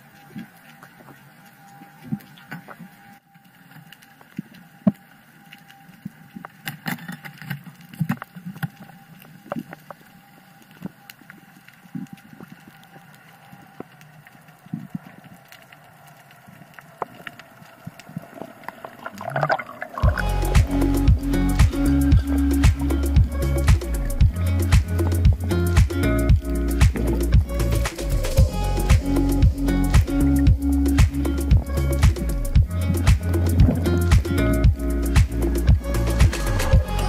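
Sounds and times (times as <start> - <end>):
underwater clicks and crackles: 0.0 - 36.8
faint hum and water noise: 0.0 - 37.0
music: 20.0 - 37.0.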